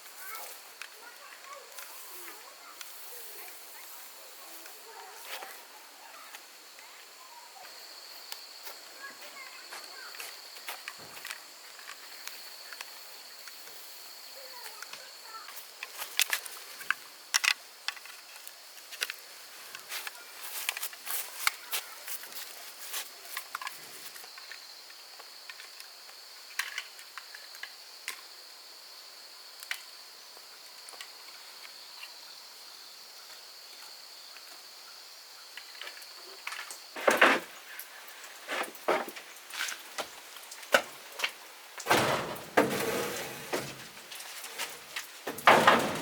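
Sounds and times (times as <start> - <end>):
insects droning: 0.0 - 46.0
sharp clicks and knocks: 40.7 - 46.0.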